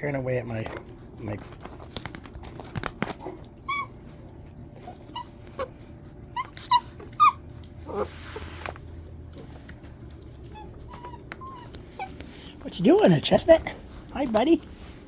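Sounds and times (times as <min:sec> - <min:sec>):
puppies yelping and whimpering: 0:03.6 - 0:08.5, 0:10.3 - 0:12.7
scuffling rustle: 0:07.9 - 0:10.9.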